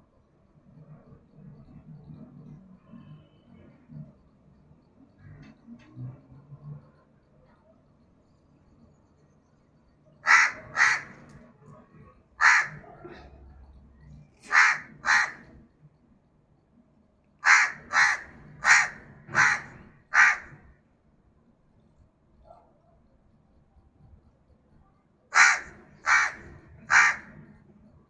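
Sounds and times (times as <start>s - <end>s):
crow cawing: 10.2s - 11.3s, 12.4s - 13.1s, 14.4s - 15.5s, 17.4s - 20.7s, 25.3s - 27.4s.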